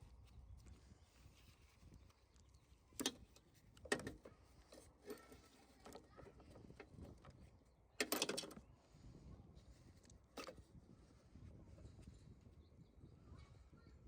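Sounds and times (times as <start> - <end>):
clicks and knocks of tools: 3.0 - 7.4, 8.0 - 8.6.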